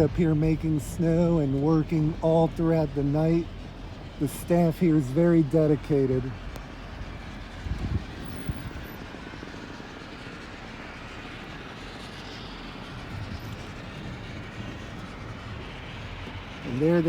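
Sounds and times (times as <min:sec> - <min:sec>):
car driving rushing noise: 0:00.0 - 0:17.0.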